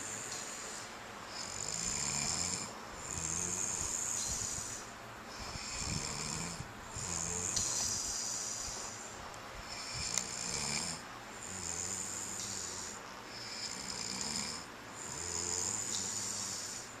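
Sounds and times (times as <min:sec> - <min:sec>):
man snoring: 0:00.0 - 0:08.8, 0:09.6 - 0:17.0
child snoring: 0:00.0 - 0:09.0, 0:09.6 - 0:17.0.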